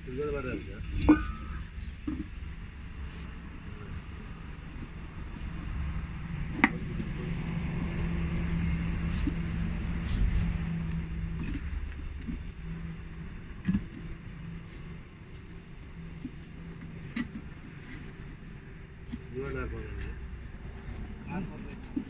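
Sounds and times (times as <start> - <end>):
vehicle engine rumble: 0.0 - 22.0
sharp metallic knocks: 0.2 - 2.3.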